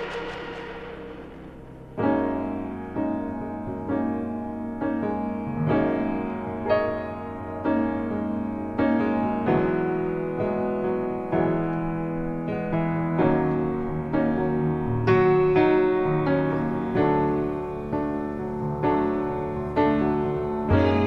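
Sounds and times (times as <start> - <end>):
piano chords: 0.0 - 21.0.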